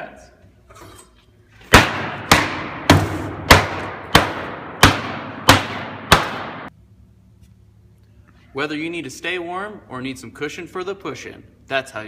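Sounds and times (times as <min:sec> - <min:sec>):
loud sharp bangs: 0:01.7 - 0:06.7.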